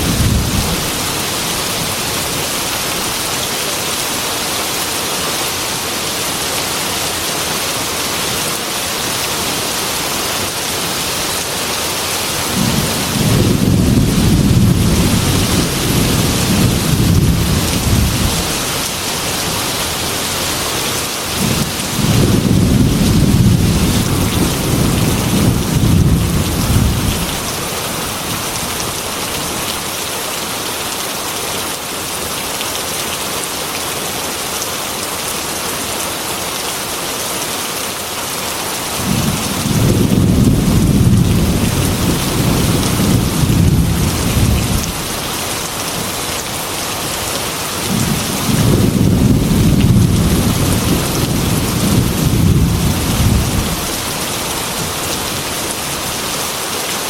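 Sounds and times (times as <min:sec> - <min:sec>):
thunder rumbling: 0:00.0 - 0:02.0, 0:12.5 - 0:20.3, 0:21.4 - 0:27.5, 0:39.0 - 0:45.2, 0:47.9 - 0:54.2
heavy rain: 0:00.0 - 0:57.0.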